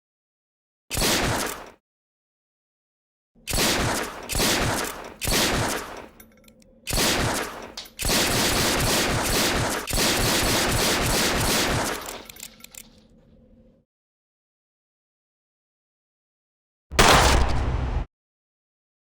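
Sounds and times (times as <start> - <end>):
automatic gunfire bursts: 3.5 - 6.0, 6.9 - 12.2.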